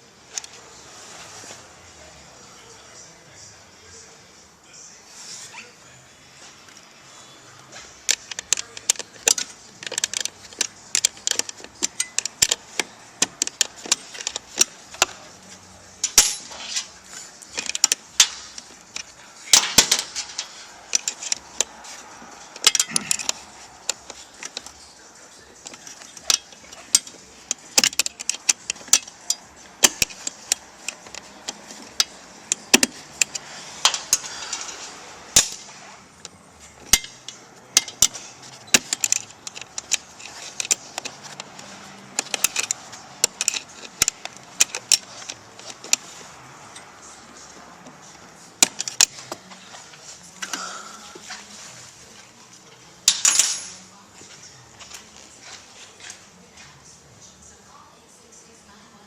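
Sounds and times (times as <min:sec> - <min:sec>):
metal parts clinking: 0:07.8 - 0:51.7, 0:53.0 - 0:53.9.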